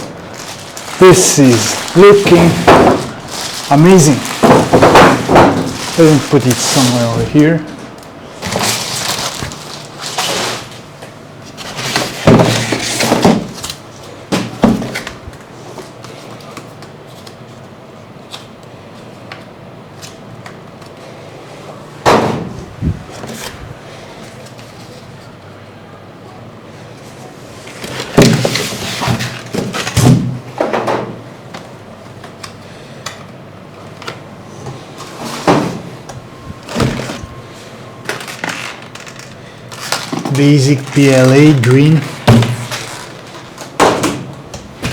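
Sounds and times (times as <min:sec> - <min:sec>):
low room hum: 0:00.0 - 0:44.9
packaging clicks and rustling: 0:00.3 - 0:11.0, 0:36.1 - 0:43.8.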